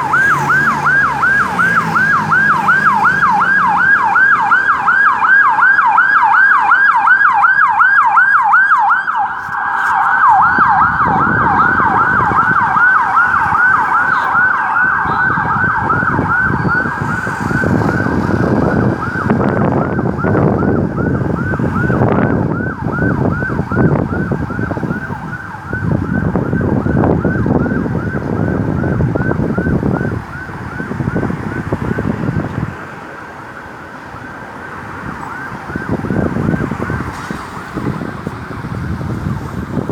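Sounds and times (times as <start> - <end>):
ambulance siren yelping: 0.0 - 39.9
road and engine noise: 0.0 - 39.9.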